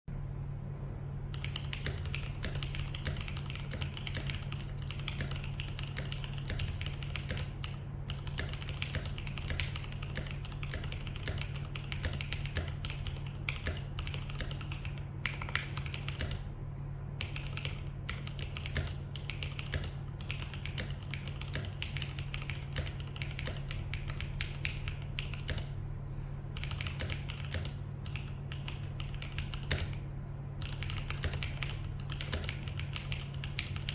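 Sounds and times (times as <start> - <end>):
steady low hum: 0.1 - 33.9
typing on mechanical keyboard: 1.3 - 16.5, 17.2 - 25.7, 26.6 - 30.0, 30.6 - 33.9.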